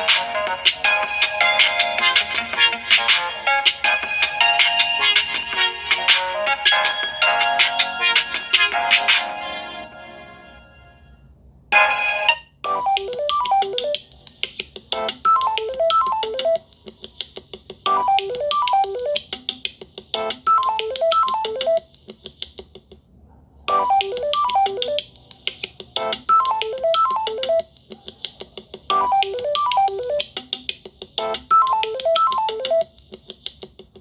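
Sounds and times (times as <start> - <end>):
electronic phone ringtone melody: 11.8 - 14.0, 15.0 - 16.6, 17.9 - 19.3, 20.2 - 21.8, 23.7 - 25.1, 26.0 - 27.7, 28.9 - 30.3, 31.2 - 32.9.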